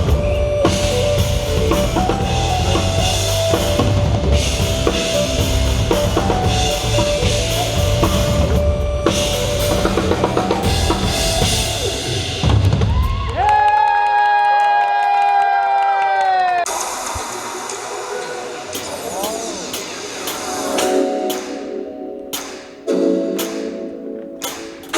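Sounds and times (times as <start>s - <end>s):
instrumental pop music over pa: 0.0s - 13.1s, 18.8s - 24.9s.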